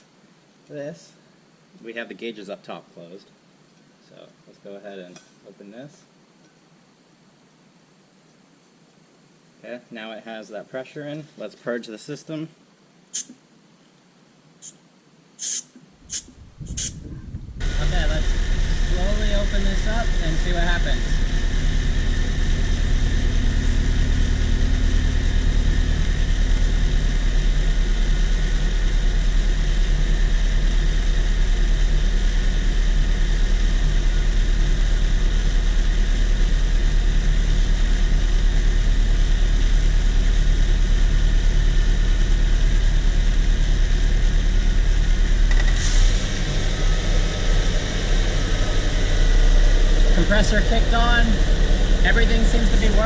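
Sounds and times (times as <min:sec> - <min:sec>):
car engine idling: 0:17.4 - 0:53.0.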